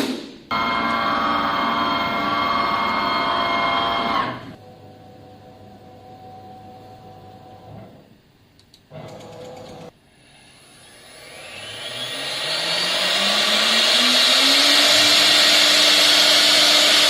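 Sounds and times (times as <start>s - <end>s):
router machine whine: 0.5s - 4.6s, 10.2s - 17.0s.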